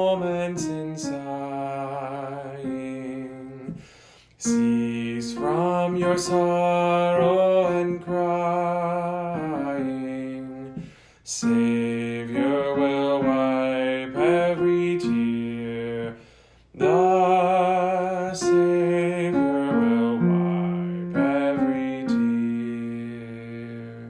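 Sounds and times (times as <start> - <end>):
voice singing with vibrato: 4.4 - 16.2, 16.8 - 24.0
choir singing a hymn: 16.8 - 23.8.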